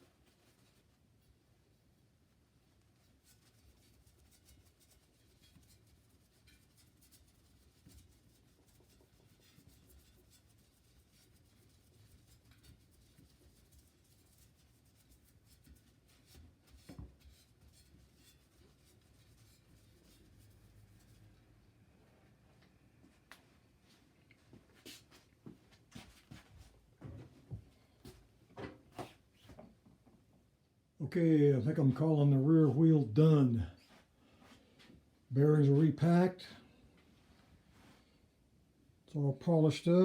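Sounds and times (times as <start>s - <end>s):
faint scratching and rubbing: 0.0s - 1.5s, 2.6s - 21.6s.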